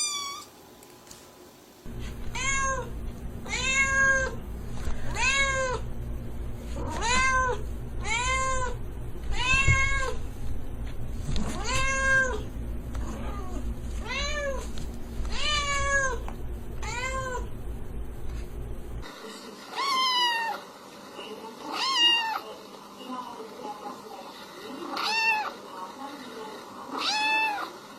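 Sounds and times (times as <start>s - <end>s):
cat meowing: 0.0s - 0.5s, 2.4s - 2.9s, 3.5s - 4.4s, 6.8s - 10.2s, 11.6s - 12.5s, 13.1s - 14.6s, 19.7s - 20.6s, 21.7s - 22.4s, 25.0s - 25.6s, 26.9s - 27.7s
steady low hum: 0.0s - 19.7s.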